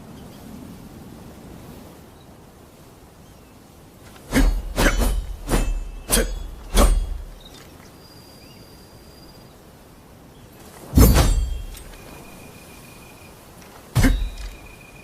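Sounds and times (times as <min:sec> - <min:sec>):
ringing weapon strikes: 0:04.3 - 0:07.4, 0:11.0 - 0:12.1, 0:14.0 - 0:14.8.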